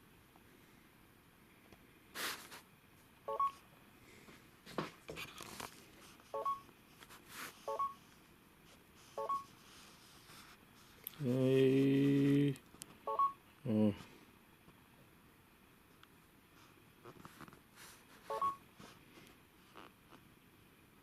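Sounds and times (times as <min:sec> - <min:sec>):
short electronic beeps: 0:03.3 - 0:03.6, 0:06.4 - 0:06.6, 0:07.7 - 0:08.0, 0:09.2 - 0:09.5, 0:13.1 - 0:13.4, 0:18.3 - 0:18.6
man saying oh: 0:13.6 - 0:14.0.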